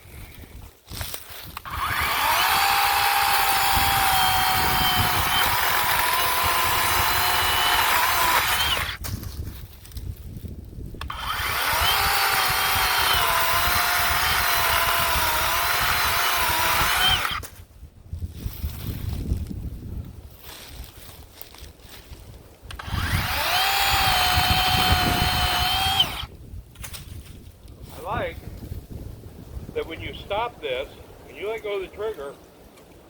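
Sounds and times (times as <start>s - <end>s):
electric chainsaw cutting wood: 1.6s - 9.0s, 11.0s - 17.5s, 22.7s - 26.3s.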